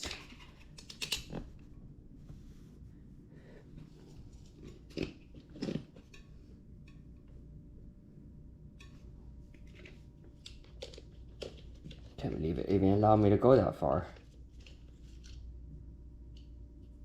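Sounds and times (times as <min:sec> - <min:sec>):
faint clicks and scrapes: 0:08.8 - 0:12.2, 0:14.1 - 0:15.5.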